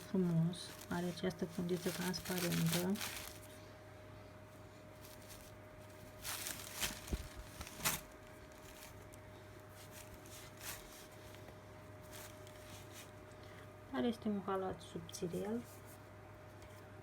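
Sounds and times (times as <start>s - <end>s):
plastic packaging crinkling: 0.0s - 3.6s, 5.0s - 13.2s
faint steady hum: 0.0s - 17.0s.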